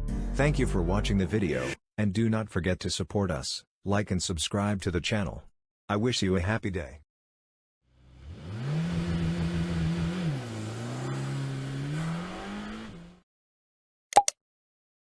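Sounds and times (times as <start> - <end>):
car accelerating: 8.0 - 13.2
sharp click: 14.2 - 14.4.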